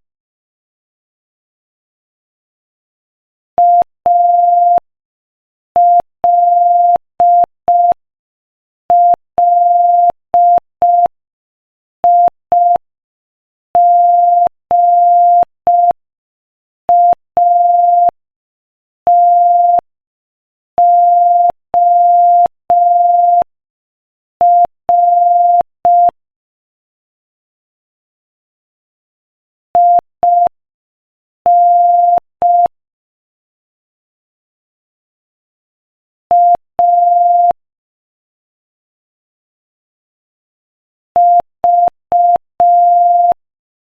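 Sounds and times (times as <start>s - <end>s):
morse code beeps: 17.0s - 18.2s, 19.1s - 19.8s, 20.8s - 23.5s, 24.4s - 26.2s, 29.8s - 30.5s, 31.5s - 32.7s, 36.3s - 37.6s, 41.2s - 43.4s.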